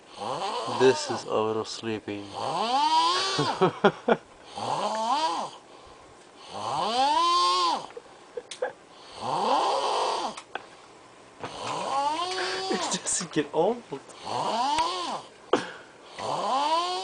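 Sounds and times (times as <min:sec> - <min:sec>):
man snoring loudly: 0:00.1 - 0:01.5, 0:02.2 - 0:03.7, 0:04.5 - 0:05.6, 0:06.4 - 0:07.9, 0:09.0 - 0:10.4, 0:11.5 - 0:13.0, 0:14.2 - 0:17.0.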